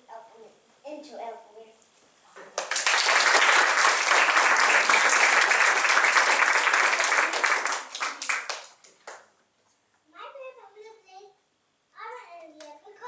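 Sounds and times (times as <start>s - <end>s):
audience applauding: 2.6s - 9.3s.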